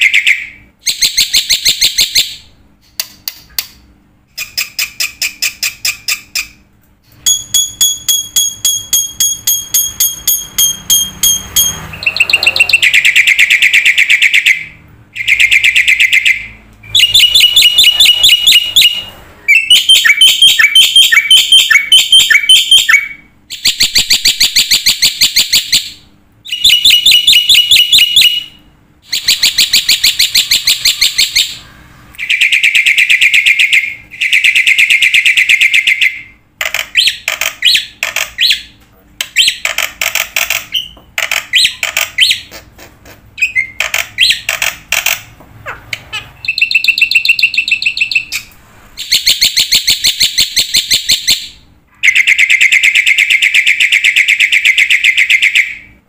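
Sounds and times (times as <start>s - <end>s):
bird calling in rapid trains: 8.0s - 36.4s.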